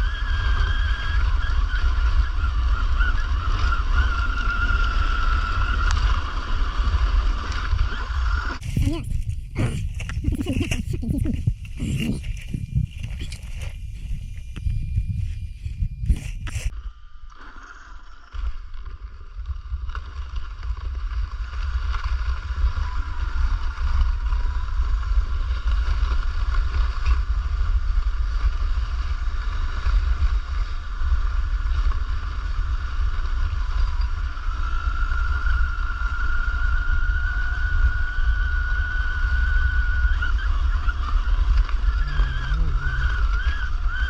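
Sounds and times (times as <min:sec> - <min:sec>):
wind buffeting microphone: 0:00.0 - 0:16.7, 0:22.2 - 0:44.0
electric motor whining: 0:39.4 - 0:44.0.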